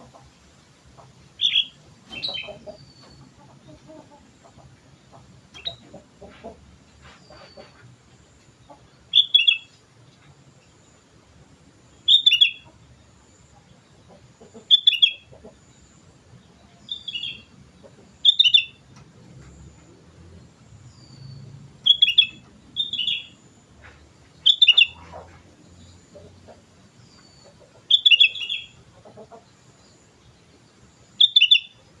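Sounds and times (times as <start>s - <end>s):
bulbul calling: 1.0s - 6.6s, 8.7s - 9.8s, 12.0s - 32.0s.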